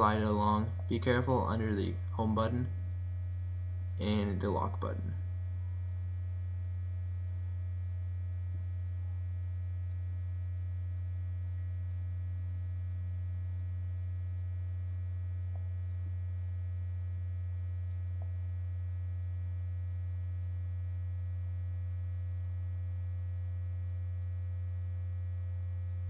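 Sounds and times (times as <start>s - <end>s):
low electrical hum: 0.0s - 26.0s
faint ticks: 15.0s - 19.7s.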